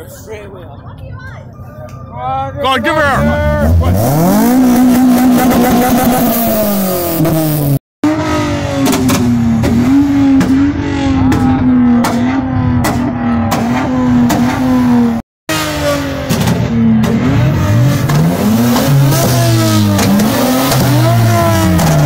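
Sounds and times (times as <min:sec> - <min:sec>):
car engine revving hard: 0:03.2 - 0:22.0.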